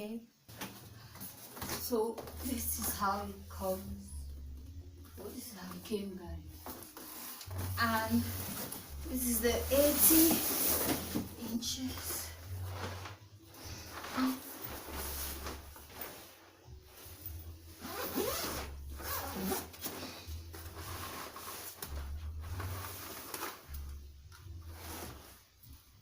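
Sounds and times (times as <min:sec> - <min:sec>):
packaging rustling and scraping: 0:00.5 - 0:02.9, 0:06.6 - 0:25.6.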